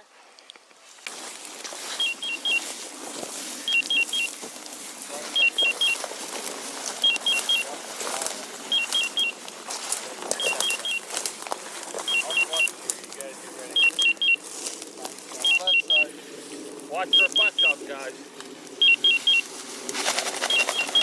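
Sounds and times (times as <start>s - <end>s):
footsteps through dry field cover: 0.7s - 21.0s
two-tone beeper collar beeps: 2.0s - 2.6s, 3.6s - 4.3s, 5.3s - 6.0s, 7.0s - 7.7s, 8.7s - 9.4s, 10.3s - 11.1s, 12.0s - 12.7s, 13.7s - 14.4s, 15.4s - 16.0s, 17.0s - 17.8s, 18.8s - 19.4s.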